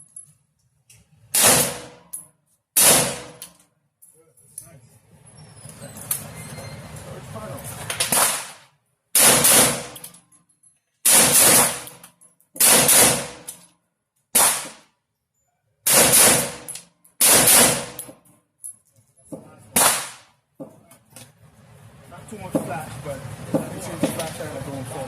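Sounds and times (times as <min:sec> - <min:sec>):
pistol gunshots: 0:01.3 - 0:02.1, 0:02.8 - 0:03.4, 0:08.0 - 0:10.0, 0:11.1 - 0:12.0, 0:12.6 - 0:13.5, 0:14.3 - 0:14.9, 0:15.9 - 0:18.1, 0:19.7 - 0:20.4.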